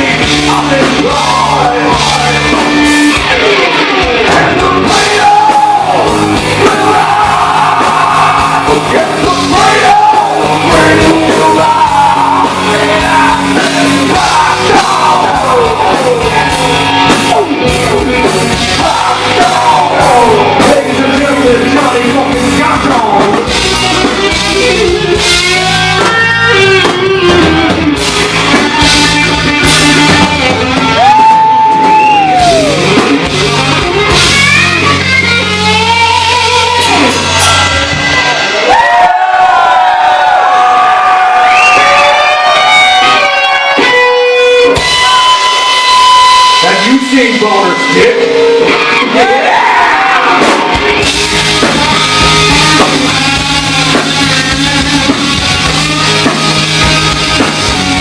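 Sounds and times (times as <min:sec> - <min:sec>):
person singing: 0:00.0 - 0:27.8
drums: 0:00.0 - 0:58.0
electric guitar: 0:00.0 - 0:58.0.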